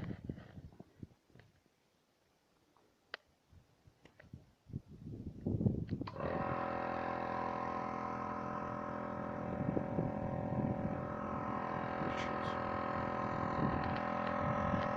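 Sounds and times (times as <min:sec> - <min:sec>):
machine motor humming: 0:06.1 - 0:14.9.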